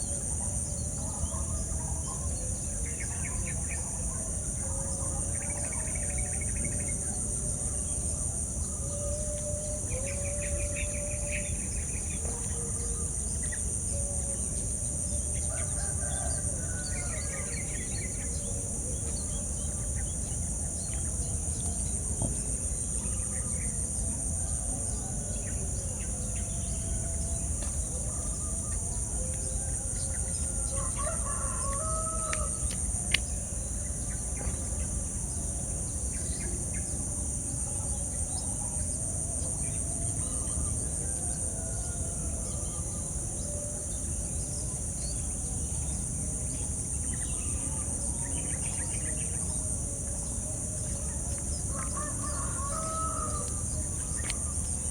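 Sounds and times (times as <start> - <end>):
roosters crowing: 30.5 - 32.6, 51.7 - 54.5.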